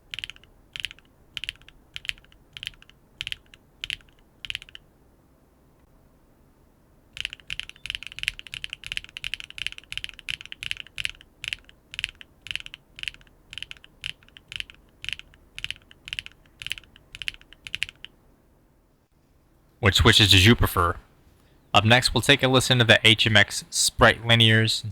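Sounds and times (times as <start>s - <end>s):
mechanical keyboard typing: 0.0s - 4.8s, 7.2s - 18.2s.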